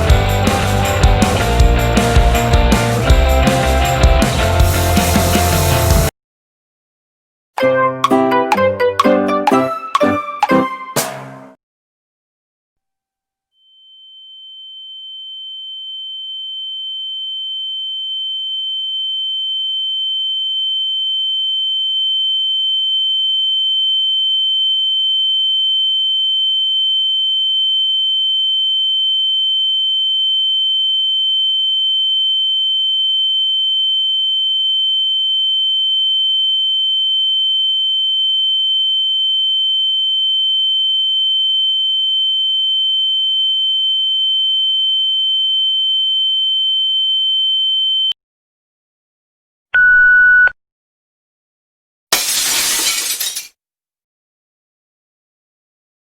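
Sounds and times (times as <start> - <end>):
high-pitched sine tone: 13.6 - 48.2.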